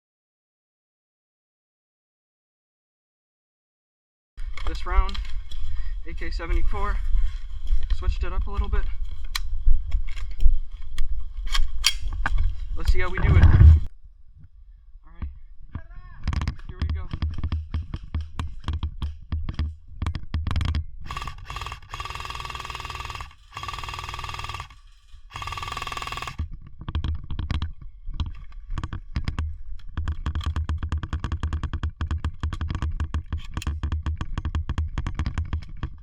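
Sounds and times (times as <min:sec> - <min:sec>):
low rumble: 0:04.4 - 0:16.2.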